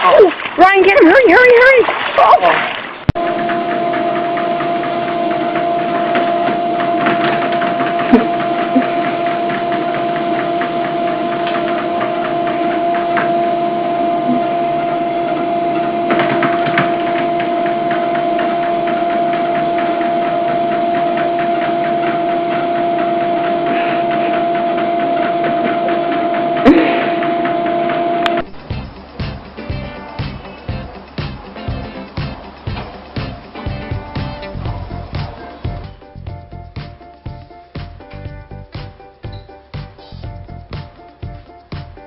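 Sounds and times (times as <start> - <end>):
motor humming: 3.1 - 36.8.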